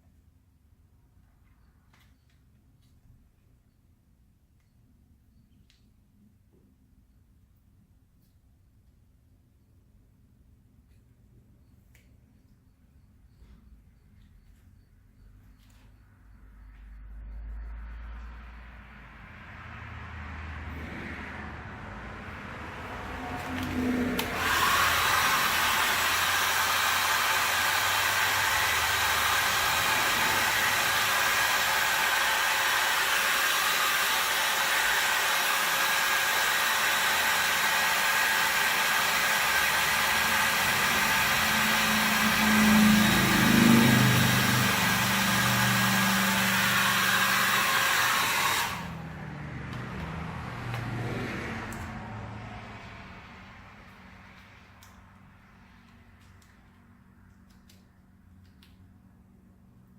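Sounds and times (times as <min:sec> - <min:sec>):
hot-air blower fan whine: 0:21.7 - 0:49.3.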